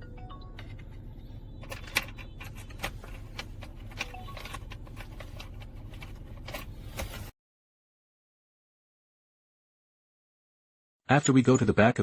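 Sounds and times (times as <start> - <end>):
steady low hum: 0.0 - 7.3.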